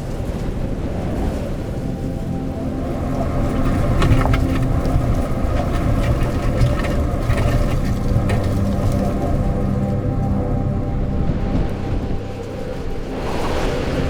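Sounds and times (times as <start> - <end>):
storm wind gusting over microphone: 0.0 - 14.0
light ticks and rattles: 2.2 - 12.6.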